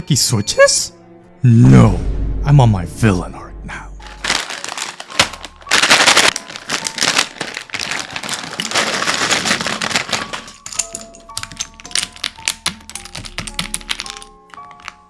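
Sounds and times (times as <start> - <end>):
fast typing on mechanical keyboard: 5.9 - 15.0.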